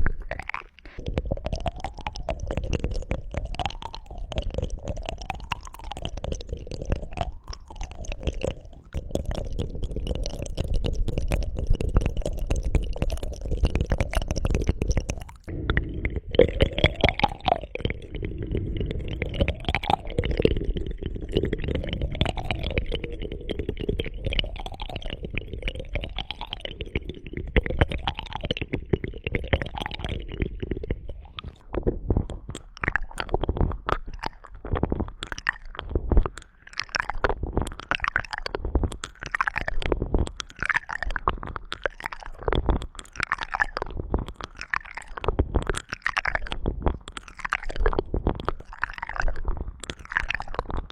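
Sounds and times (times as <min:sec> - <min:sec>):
crackly clicks and pops: 0:00.0 - 0:50.9
rubbing and scraping on microphone: 0:27.3 - 0:50.9.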